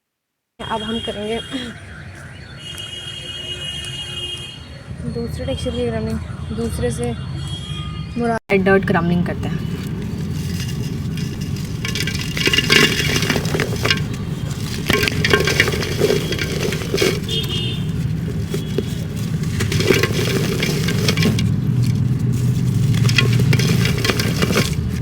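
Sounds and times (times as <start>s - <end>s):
dirt crunching by hand: 9.7s - 25.0s.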